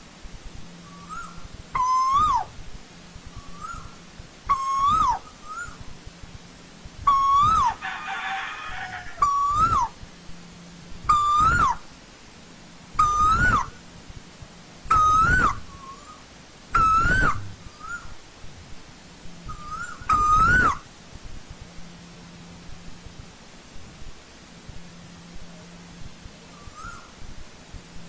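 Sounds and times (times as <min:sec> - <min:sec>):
koel calling: 0:00.8 - 0:02.6, 0:03.4 - 0:05.8, 0:07.1 - 0:10.0, 0:11.1 - 0:11.8, 0:13.0 - 0:13.8, 0:14.9 - 0:16.2, 0:16.8 - 0:18.1, 0:19.5 - 0:20.8.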